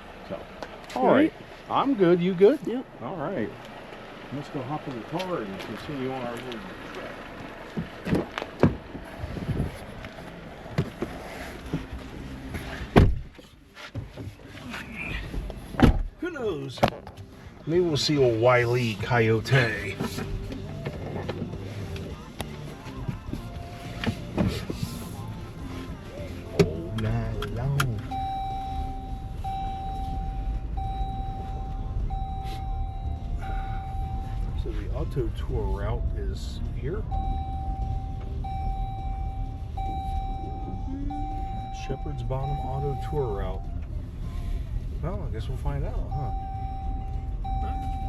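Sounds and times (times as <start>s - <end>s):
low rumble of car: 0.0s - 48.0s
car door slamming: 7.8s - 9.8s, 12.8s - 13.4s, 15.7s - 16.2s
dashboard warning chime: 27.9s - 34.8s, 37.0s - 43.7s, 46.0s - 48.0s.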